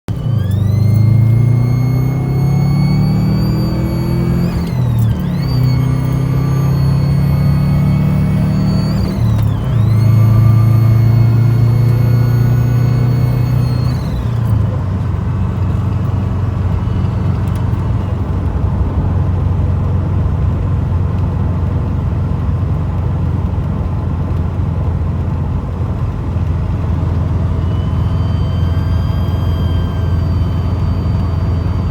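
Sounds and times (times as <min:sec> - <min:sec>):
car engine humming: 0:00.0 - 0:31.9
high whistle: 0:00.2 - 0:14.6, 0:27.4 - 0:31.9.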